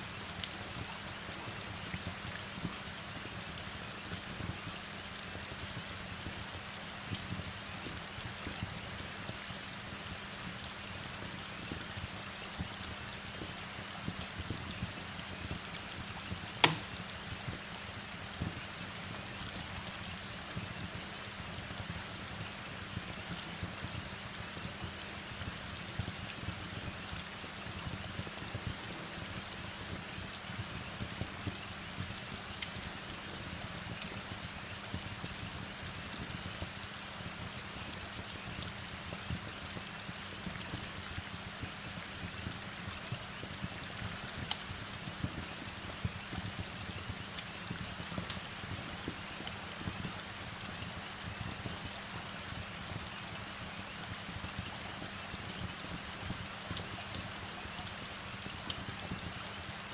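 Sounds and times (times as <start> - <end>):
steady rain: 0.0 - 59.9
wood fire crackling and popping: 11.2 - 17.6, 31.2 - 35.6, 43.3 - 50.3, 54.4 - 57.8, 58.4 - 59.3.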